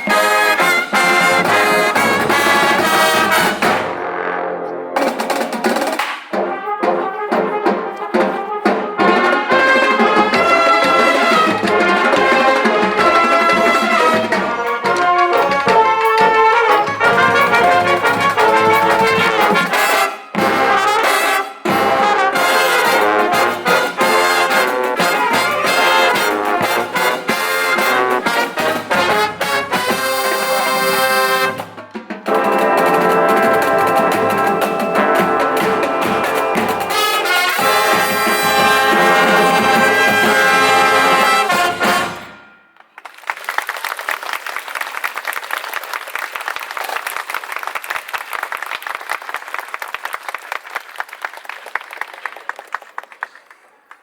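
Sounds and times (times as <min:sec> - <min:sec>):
marching band brass and drums: 0:00.0 - 0:43.0
audience applause: 0:42.8 - 0:54.0.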